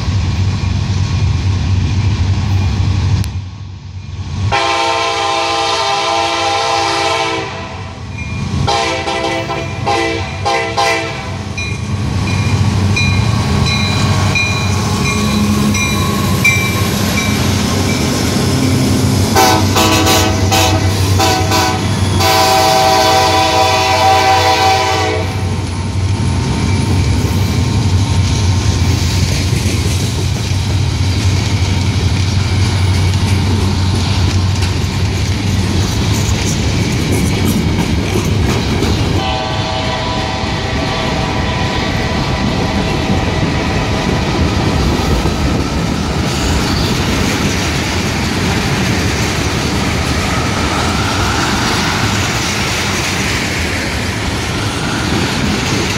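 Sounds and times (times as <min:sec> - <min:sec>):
train rumbling past: 0:00.0 - 0:55.9
locomotive horn chord: 0:04.5 - 0:08.0, 0:08.7 - 0:11.4, 0:19.3 - 0:25.5, 0:39.2 - 0:42.9
wheels clacking over rail joints: 0:25.5 - 0:39.3, 0:43.4 - 0:55.9.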